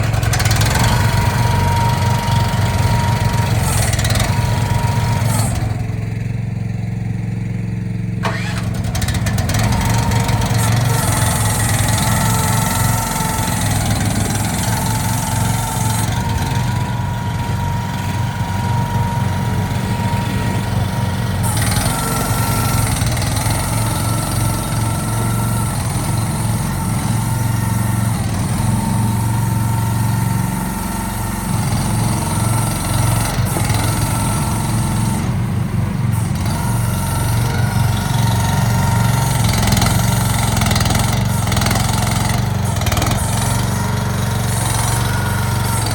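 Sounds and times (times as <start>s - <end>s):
excavator engine running: 0.0s - 45.9s.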